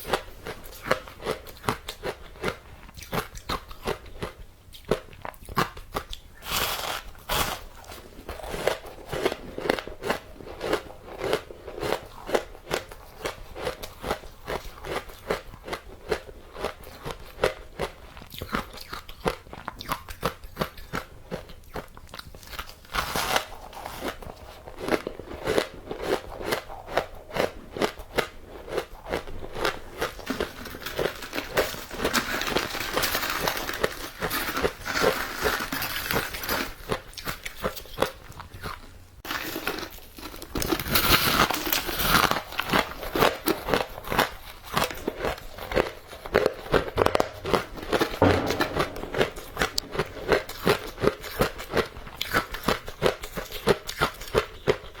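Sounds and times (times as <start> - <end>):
crunching and chewing ice: 0.0 - 47.5, 52.1 - 55.0.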